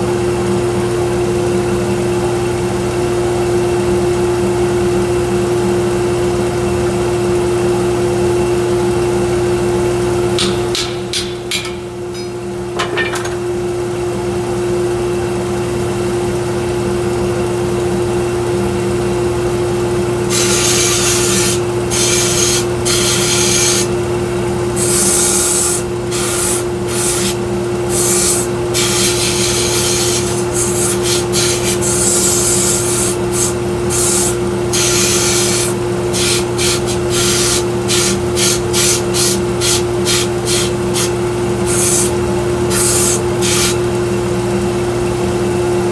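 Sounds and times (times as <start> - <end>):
metal grinding on sander belt: 20.3 - 24.0, 24.8 - 43.9.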